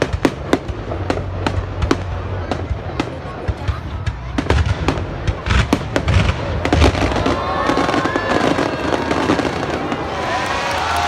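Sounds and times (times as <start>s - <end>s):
fireworks crackling: 0.0s - 11.0s
fireworks sharp bangs: 0.0s - 11.0s
fireworks whistling: 5.7s - 11.0s.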